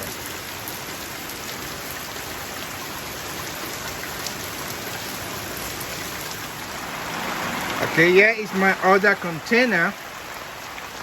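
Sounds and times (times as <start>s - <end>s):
rainwater running off roof: 0.0s - 11.0s
steady rain falling: 0.0s - 11.0s.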